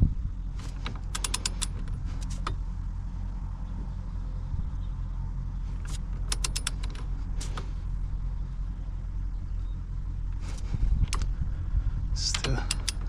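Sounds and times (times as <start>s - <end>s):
low steady hum: 0.0s - 13.0s
torque wrench ratcheting clicks: 0.8s - 2.5s, 5.9s - 7.0s, 12.2s - 13.0s.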